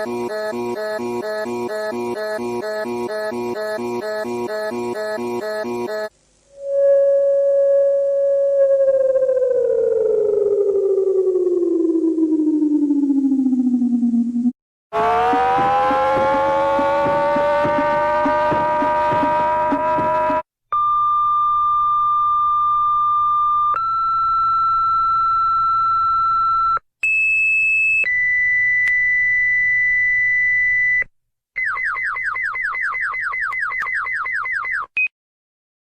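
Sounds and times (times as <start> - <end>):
stepping electronic alert tone: 0.0 - 6.1, 15.0 - 20.4
emergency alert tone chord: 15.0 - 20.4
rapid low pulsing knocks: 15.0 - 20.4.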